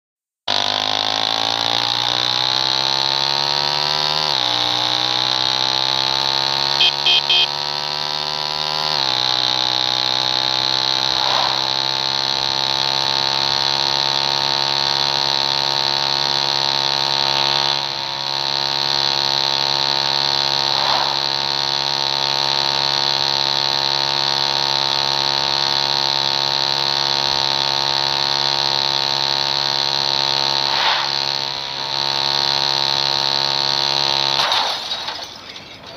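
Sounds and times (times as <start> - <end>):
machine motor whine: 0.5 - 34.4
short beeps: 6.8 - 7.5.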